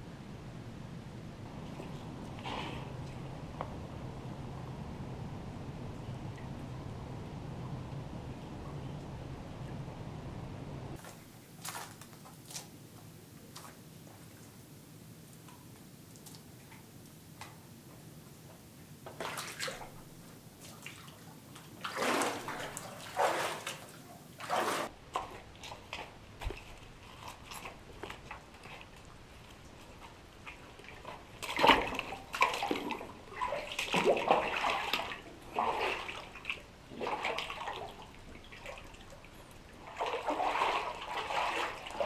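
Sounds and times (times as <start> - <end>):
water sloshing and splashing: 19.1 - 42.0.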